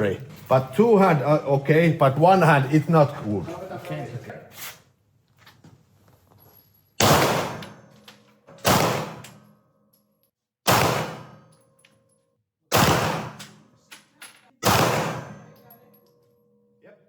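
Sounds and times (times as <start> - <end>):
pistol shots with echo: 7.0 - 7.9, 8.6 - 9.5, 10.7 - 11.5, 12.7 - 13.7, 14.6 - 15.8.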